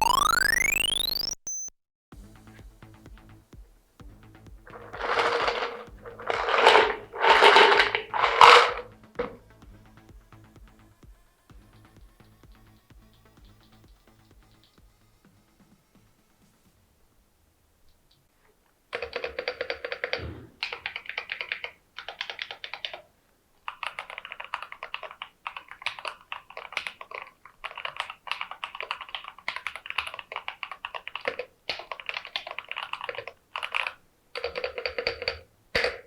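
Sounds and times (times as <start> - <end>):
mechanical keyboard key clacks: 23.7 - 36.0.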